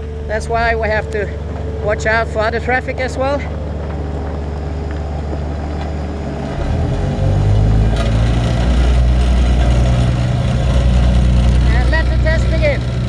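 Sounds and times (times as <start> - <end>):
road roller diesel engine: 0.0 - 13.0.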